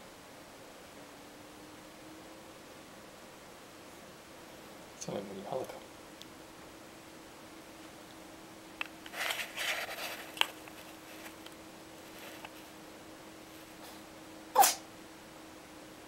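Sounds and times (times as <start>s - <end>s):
pet sneezing: 14.6s - 14.8s.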